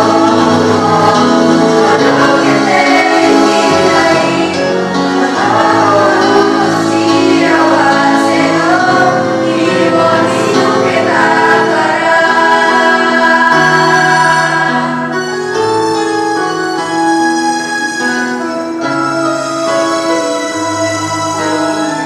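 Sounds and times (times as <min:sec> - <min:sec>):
group singing in unison: 0:00.0 - 0:15.2.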